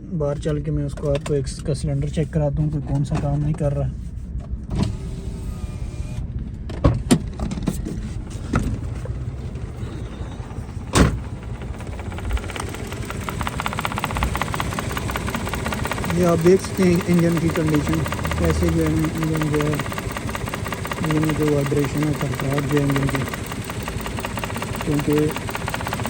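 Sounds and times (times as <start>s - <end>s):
engine idling roughly: 7.9s - 26.0s
rapid engine ticking: 8.3s - 26.0s.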